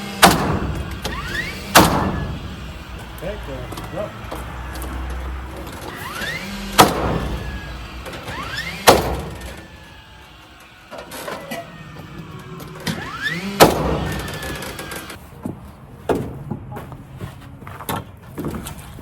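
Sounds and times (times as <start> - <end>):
nail gun firing: 0.0 - 3.0, 5.6 - 10.2, 12.8 - 15.2
nail gun motor whine: 0.0 - 15.2.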